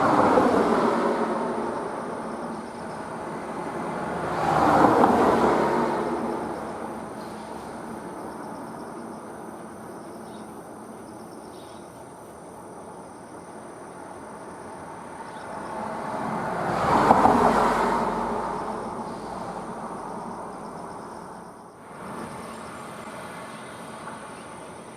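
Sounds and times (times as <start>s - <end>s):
vehicle passing by: 0.0s - 8.7s, 14.8s - 24.9s
distant traffic: 0.0s - 24.9s.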